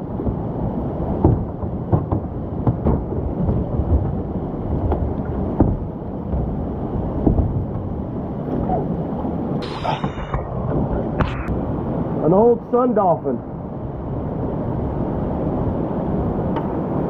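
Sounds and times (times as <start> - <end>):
wind buffeting microphone: 0.0 - 17.0
rushing whitewater: 3.7 - 13.7.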